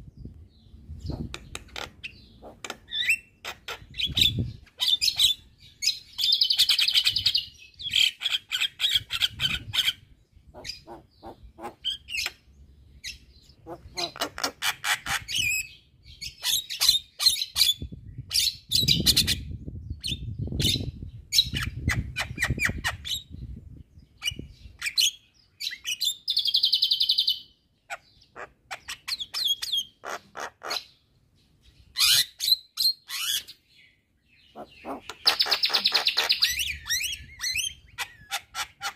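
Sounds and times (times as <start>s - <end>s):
bird singing harsh rattles: 1.0s - 12.5s, 34.5s - 38.9s.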